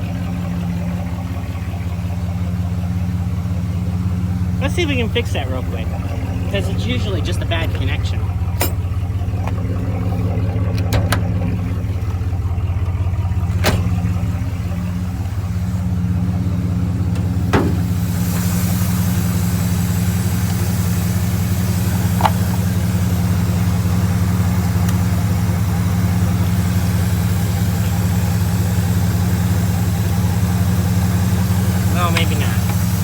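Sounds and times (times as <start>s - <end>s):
car engine idling: 0.0s - 33.0s.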